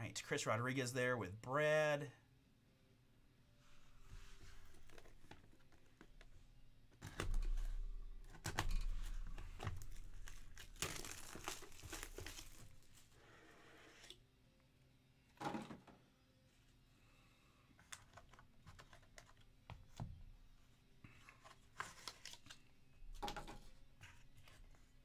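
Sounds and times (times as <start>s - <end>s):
plastic packaging crinkling: 9.4s - 13.1s.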